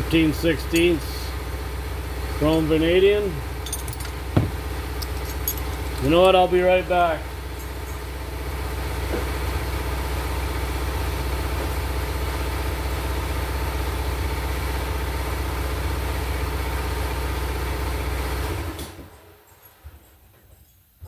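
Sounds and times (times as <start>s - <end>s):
air compressor humming: 0.0s - 9.8s.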